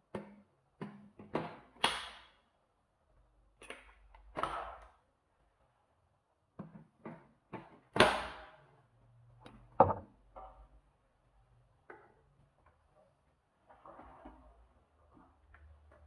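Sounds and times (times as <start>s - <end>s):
sharp knocks and clicks: 9.8s - 10.1s.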